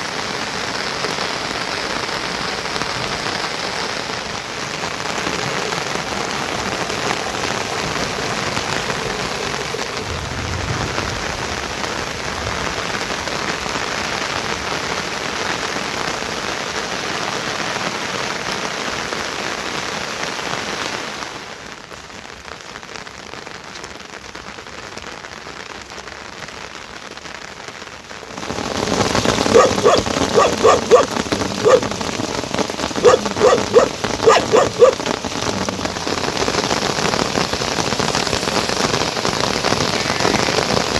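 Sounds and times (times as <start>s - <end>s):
heavy rain falling: 0.0s - 40.9s
dog barking: 29.4s - 32.3s, 33.0s - 36.2s.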